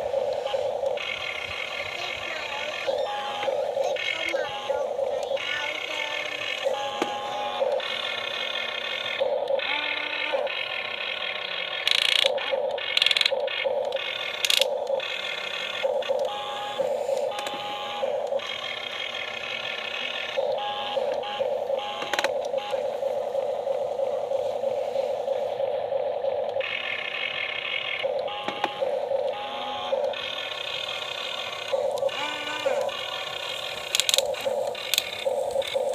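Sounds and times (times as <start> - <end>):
small electric motors whining: 0.0 - 35.9
sharp clicks and clatter: 5.0 - 22.7, 26.2 - 35.9.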